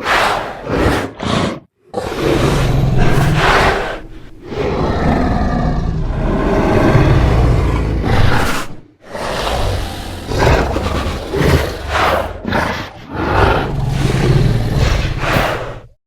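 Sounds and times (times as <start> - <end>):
creature roars and growls: 0.0 - 16.0.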